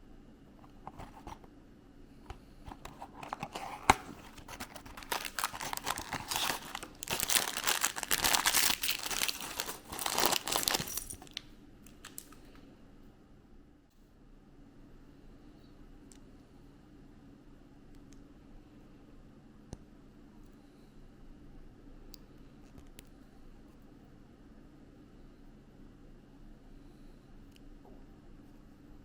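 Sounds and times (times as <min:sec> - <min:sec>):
packaging crinkling and tearing: 0:02.7 - 0:12.4.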